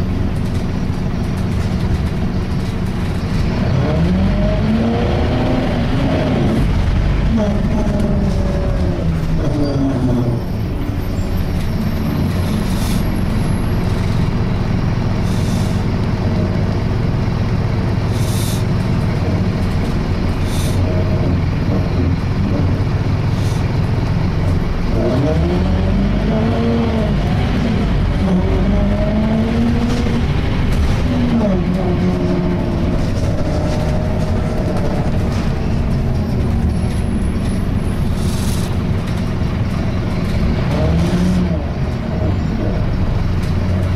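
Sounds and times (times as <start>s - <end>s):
bus engine and road rumble: 0.0s - 43.9s
short hisses: 18.1s - 18.6s.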